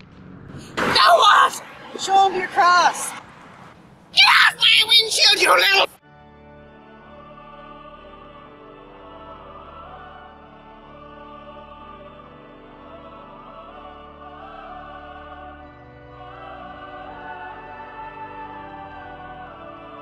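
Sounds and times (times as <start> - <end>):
choral operatic singing: 6.7 - 20.0.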